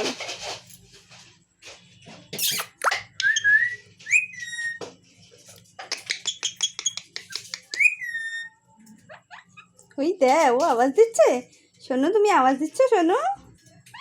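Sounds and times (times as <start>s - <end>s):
parrot screeching: 2.4s - 4.8s, 6.0s - 9.8s
parrot whistling: 2.4s - 4.8s, 6.0s - 8.6s
parrot clicks: 5.8s - 7.9s.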